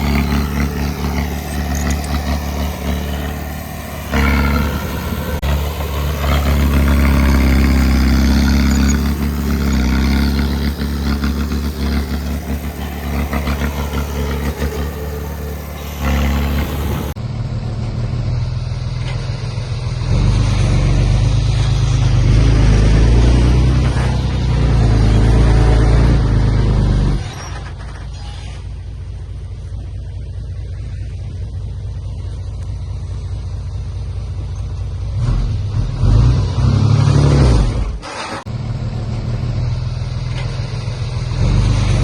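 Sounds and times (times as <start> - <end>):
diesel engine under load: 0.0 - 42.0.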